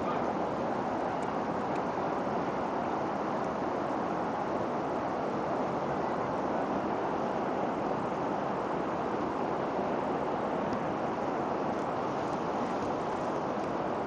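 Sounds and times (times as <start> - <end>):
rain falling steadily: 0.0 - 14.0.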